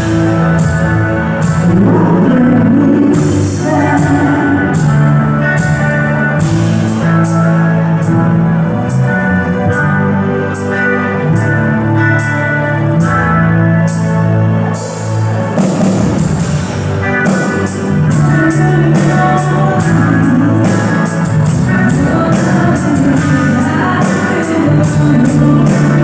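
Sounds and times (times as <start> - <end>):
band playing rock music: 0.0 - 26.0
electric guitar: 0.0 - 26.0.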